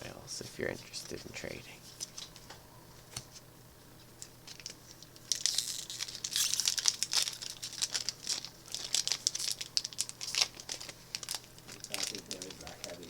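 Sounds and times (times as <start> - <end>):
foil wrapper crinkling: 4.2 - 13.0.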